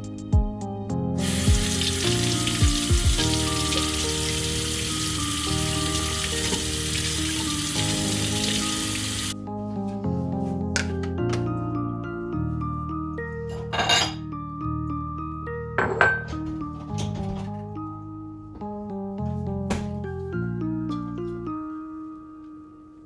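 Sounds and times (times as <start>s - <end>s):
background music: 0.0s - 23.0s
tap water running into sink: 1.2s - 9.4s.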